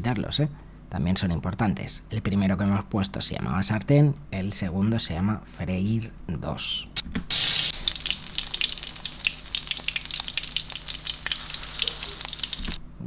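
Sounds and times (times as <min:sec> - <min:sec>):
meat sizzling in hot oil: 0:07.3 - 0:12.8.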